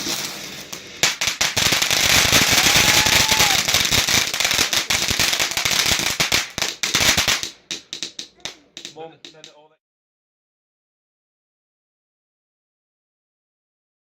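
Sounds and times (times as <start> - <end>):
fireworks crackling bangs: 0.0 - 9.6.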